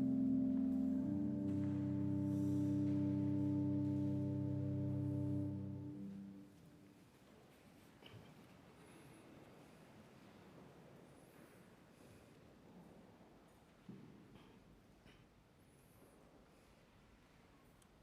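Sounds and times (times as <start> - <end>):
sustained low instrumental chords: 0.0 - 6.6.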